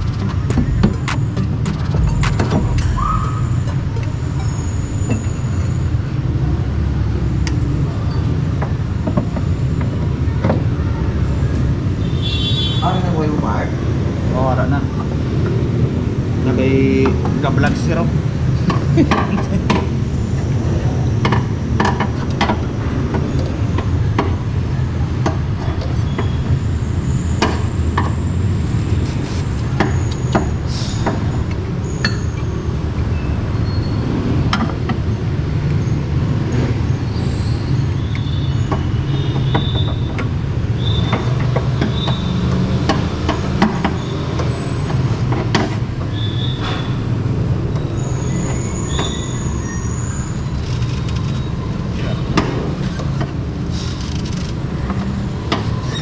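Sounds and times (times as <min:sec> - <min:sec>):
metallic clicks and knocks: 0:00.0 - 0:04.6
high squeaks: 0:00.0 - 0:06.0
road traffic rumble: 0:00.0 - 0:56.0.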